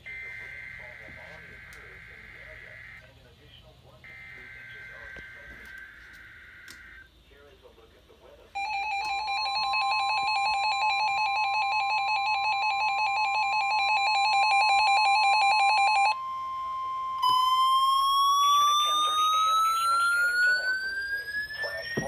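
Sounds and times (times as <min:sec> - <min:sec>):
two-tone alert beep: 0:17.2 - 0:22.0.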